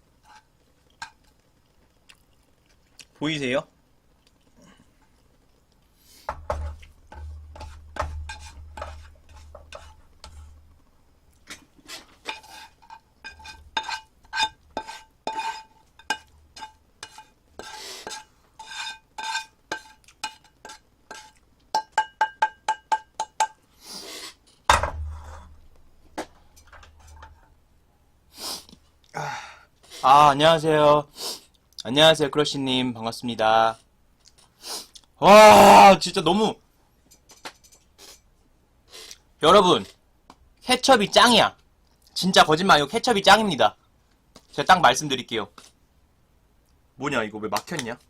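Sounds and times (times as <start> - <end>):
metal utensil clinking against dish: 21.8 - 23.6.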